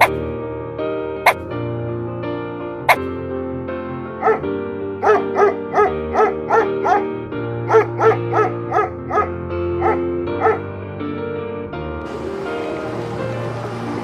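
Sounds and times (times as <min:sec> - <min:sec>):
background music: 0:00.0 - 0:14.0
dog yipping: 0:04.2 - 0:04.4, 0:05.0 - 0:07.1, 0:07.7 - 0:10.6.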